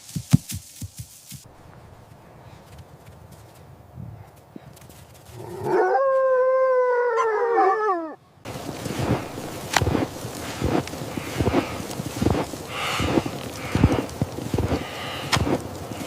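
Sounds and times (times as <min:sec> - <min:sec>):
dog howling: 0:05.4 - 0:08.2
dull thuds: 0:08.5 - 0:16.0.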